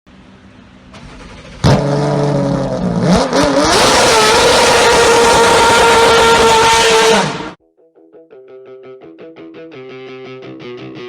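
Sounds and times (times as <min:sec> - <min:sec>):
race car engine revving: 0:01.0 - 0:07.6.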